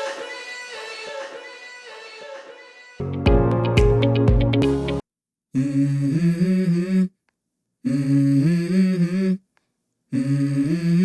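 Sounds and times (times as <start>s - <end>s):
person humming: 5.6s - 7.2s, 7.8s - 9.4s, 10.1s - 11.0s.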